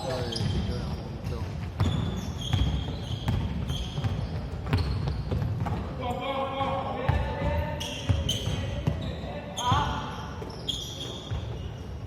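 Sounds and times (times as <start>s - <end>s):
shoe squeaks: 0.0s - 6.4s, 7.2s - 12.0s
basketball bouncing on gym floor: 0.3s - 6.0s, 6.6s - 10.0s.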